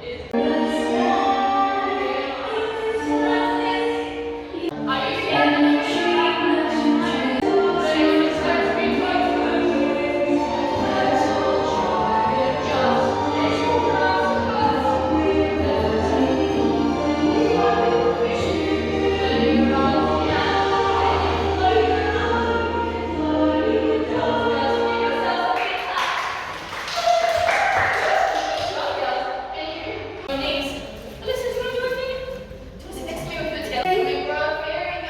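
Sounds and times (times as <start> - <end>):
choir singing sustained chords: 0.3 - 25.6.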